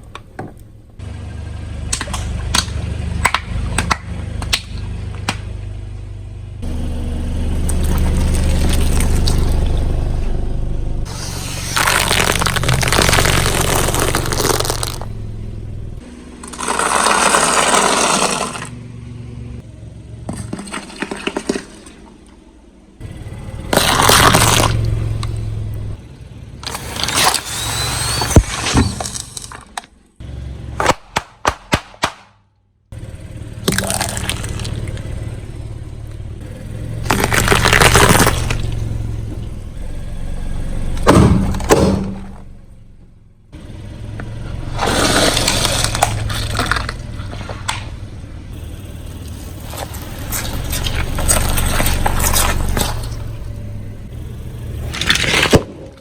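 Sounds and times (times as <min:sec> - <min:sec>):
low tyre rumble: 0:00.0 - 0:56.0
tyres crushing objects: 0:11.1 - 0:15.1, 0:16.0 - 0:18.8, 0:20.3 - 0:22.2, 0:23.6 - 0:25.3, 0:26.6 - 0:30.1, 0:30.8 - 0:32.4, 0:36.4 - 0:39.2, 0:41.0 - 0:42.4, 0:44.7 - 0:48.0, 0:54.9 - 0:56.0.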